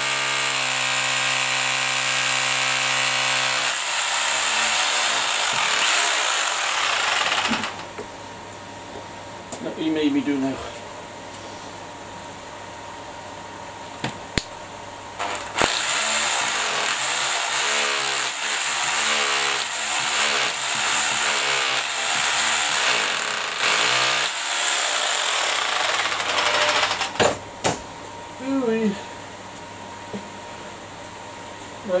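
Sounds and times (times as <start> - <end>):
power tool grinding: 0.0 - 7.8, 15.2 - 27.2.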